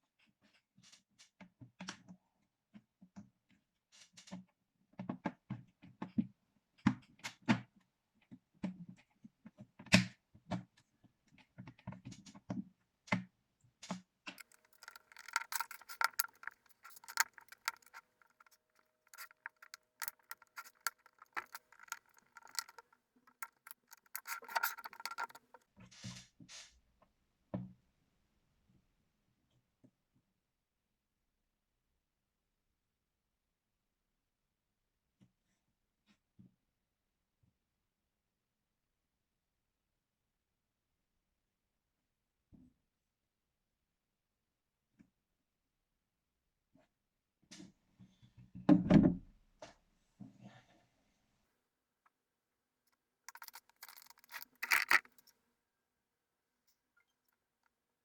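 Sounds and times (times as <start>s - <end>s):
fine clicking and scraping: 14.4s - 25.6s, 53.3s - 55.3s.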